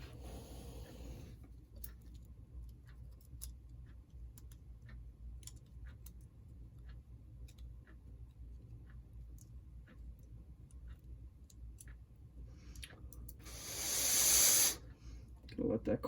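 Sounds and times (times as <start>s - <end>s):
low steady hum: 0.0s - 16.0s
light clicks and taps of small parts: 1.4s - 13.4s.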